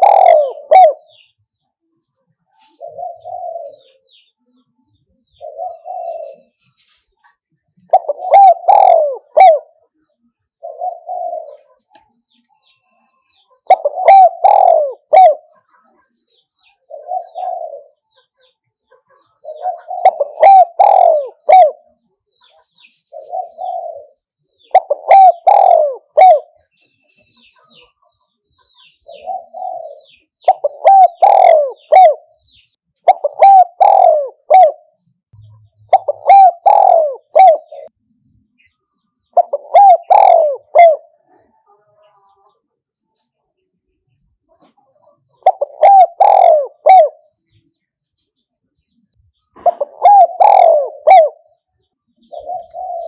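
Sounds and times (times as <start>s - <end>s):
dove cooing: 0.0s - 1.3s, 2.6s - 4.1s, 5.3s - 6.6s, 7.8s - 9.9s, 10.6s - 12.0s, 13.6s - 15.6s, 16.9s - 18.3s, 19.4s - 21.9s, 23.1s - 26.6s, 29.0s - 37.9s, 39.3s - 41.3s, 44.6s - 47.3s, 49.6s - 51.5s, 52.2s - 53.0s.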